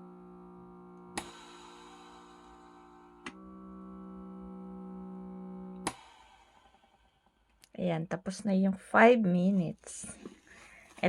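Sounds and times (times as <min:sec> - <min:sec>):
air pump humming: 0:00.0 - 0:07.7, 0:09.4 - 0:11.0
massager switch click: 0:01.0 - 0:01.6, 0:03.2 - 0:03.4, 0:05.8 - 0:06.7.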